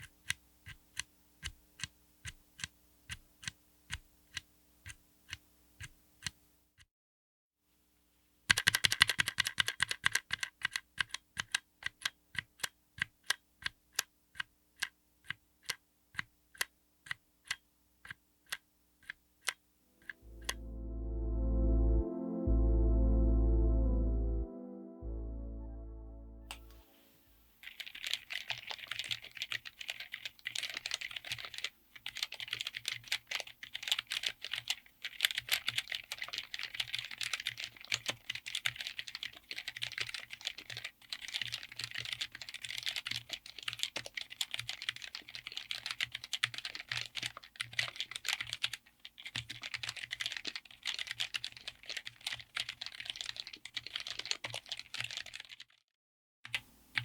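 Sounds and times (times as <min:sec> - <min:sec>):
fast typing on mechanical keyboard: 0:08.5 - 0:13.4, 0:27.6 - 0:55.8.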